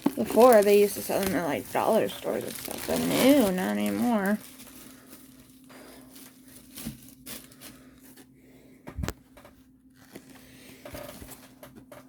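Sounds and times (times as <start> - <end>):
packaging rustling: 0.0 - 8.2
faint steady hum: 0.0 - 12.0.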